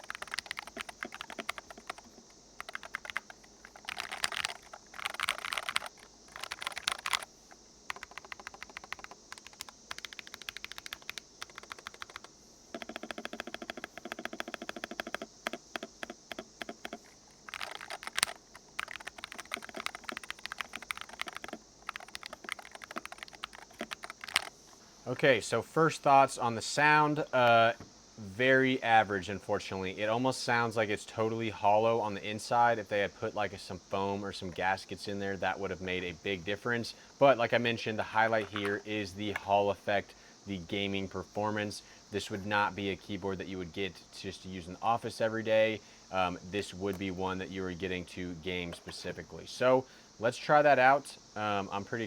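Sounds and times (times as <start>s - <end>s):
keyboard key clacks: 0.0s - 7.2s, 7.9s - 24.5s.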